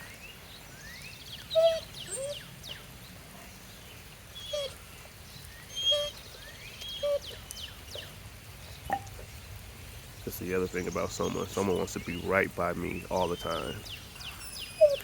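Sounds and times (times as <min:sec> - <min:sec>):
dog whining: 0:01.5 - 0:02.4, 0:04.4 - 0:04.8, 0:05.7 - 0:06.2, 0:06.9 - 0:08.1, 0:14.3 - 0:15.0.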